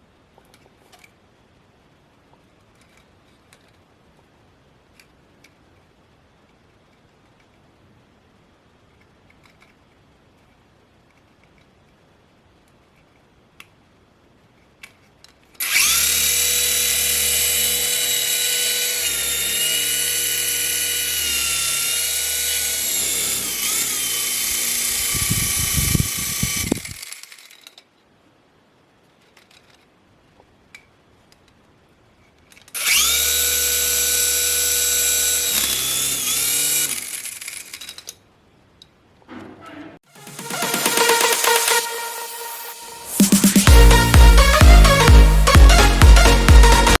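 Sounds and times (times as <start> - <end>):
toy helicopter motor whining: 15.6 - 27.8, 32.8 - 38.2.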